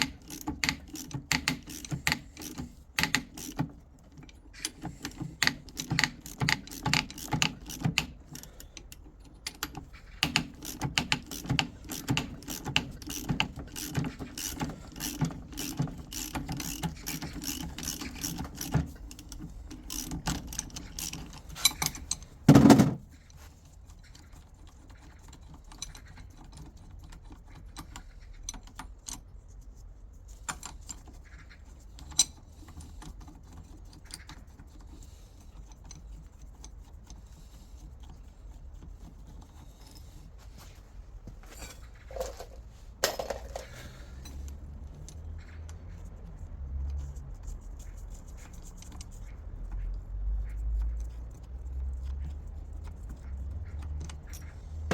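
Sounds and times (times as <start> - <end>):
rapid ratchet-like clicking: 0.0 - 3.7, 4.6 - 8.7, 9.4 - 22.2
hand tools clicking and clattering: 0.0 - 23.1, 41.4 - 45.7.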